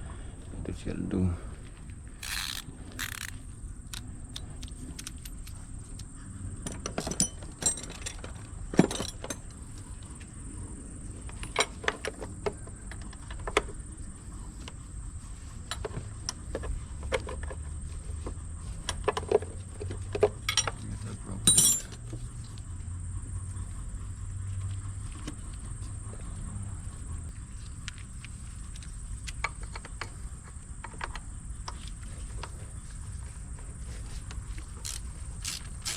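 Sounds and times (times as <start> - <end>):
metal hand tools clinking: 2.2 - 3.4, 21.4 - 22.0, 34.9 - 35.9.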